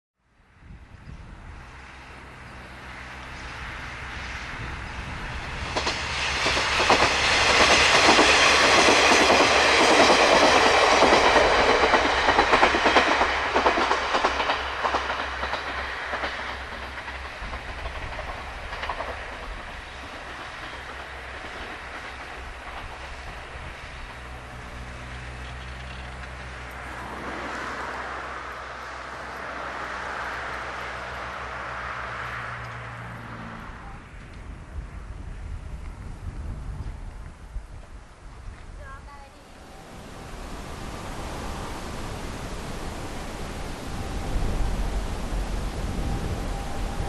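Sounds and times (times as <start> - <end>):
diesel railcar passing: 0.2 - 47.0
wheels clicking over rail joints: 4.7 - 32.9.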